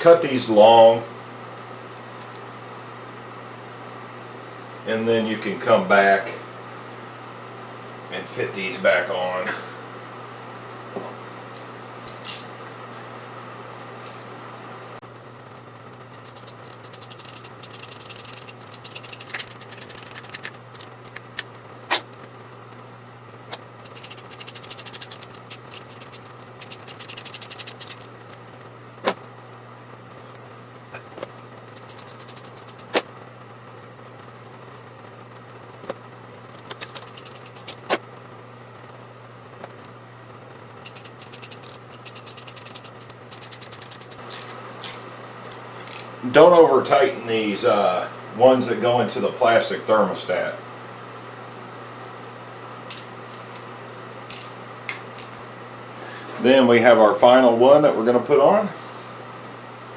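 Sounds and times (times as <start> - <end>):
steady low hum: 0.0 - 59.9
rapid clicking of hand tools: 16.1 - 21.5, 23.8 - 28.1, 31.7 - 33.0, 36.7 - 37.8, 40.8 - 45.0.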